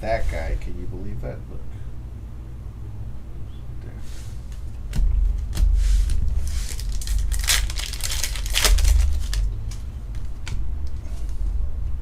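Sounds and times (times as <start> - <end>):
steady low hum: 0.0 - 12.0
foil pack tearing and crinkling: 6.0 - 10.6.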